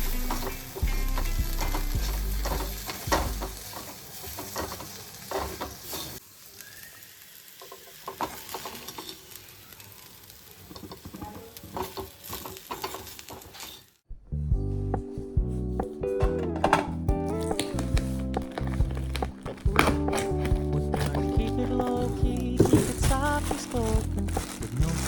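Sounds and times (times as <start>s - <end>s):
food sizzling in a pan: 0.0s - 14.0s
spatula scraping a pan: 10.7s - 13.9s.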